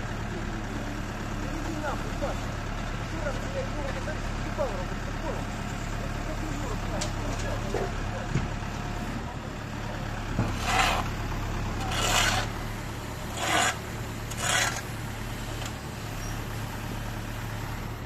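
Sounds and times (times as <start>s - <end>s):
diesel engine drone: 0.0s - 18.0s
rasping scrapes: 10.5s - 11.1s, 11.8s - 12.6s, 13.3s - 14.9s.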